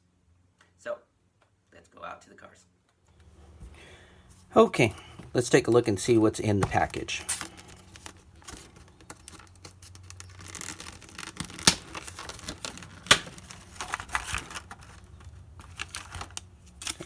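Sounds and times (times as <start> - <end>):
packaging rustling and tearing: 3.2 - 17.0.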